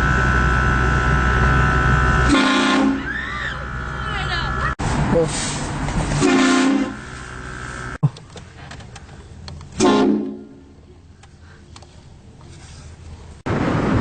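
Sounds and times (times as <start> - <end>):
train horn chord blasts: 2.2 - 3.0, 6.2 - 7.2, 9.8 - 10.8.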